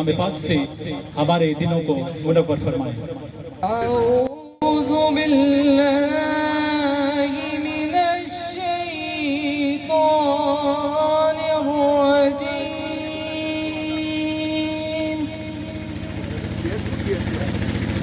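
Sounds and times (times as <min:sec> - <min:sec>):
chanted vocal melody: 0:03.6 - 0:16.4.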